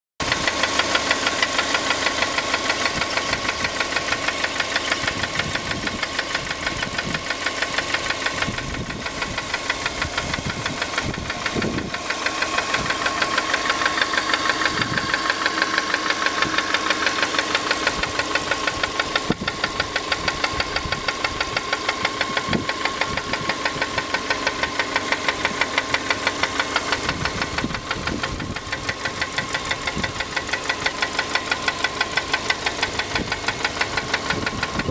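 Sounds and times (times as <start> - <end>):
engine knocking: 0.2 - 34.9.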